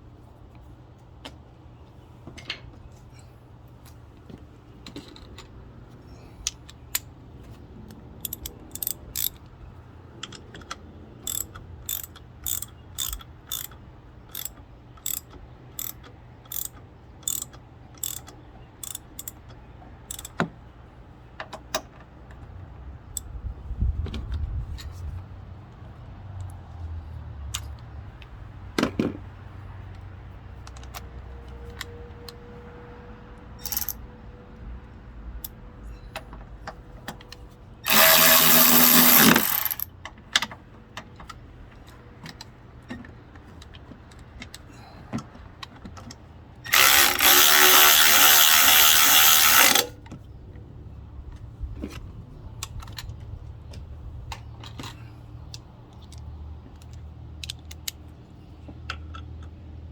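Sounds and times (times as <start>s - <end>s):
hand tool metal clicks: 8.2s - 9.4s, 10.2s - 19.4s, 20.1s - 20.4s, 33.6s - 34.0s, 37.9s - 39.9s
power tool driving bolts: 8.2s - 9.4s, 11.3s - 13.7s, 14.3s - 15.2s, 15.8s - 17.4s, 18.0s - 18.2s, 18.8s - 19.3s, 20.1s - 20.4s, 33.6s - 34.0s, 37.8s - 39.9s, 46.7s - 49.9s.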